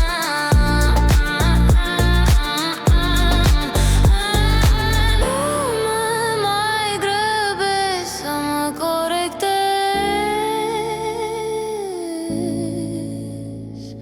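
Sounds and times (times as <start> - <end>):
thumping bass beat: 0.0 - 5.2
electro-pop music: 0.0 - 12.7
woman singing wordless melody: 0.0 - 14.0.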